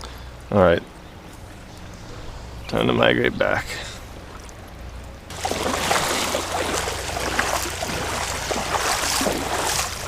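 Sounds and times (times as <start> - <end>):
shallow water sloshing and splashing: 4.0 - 10.0.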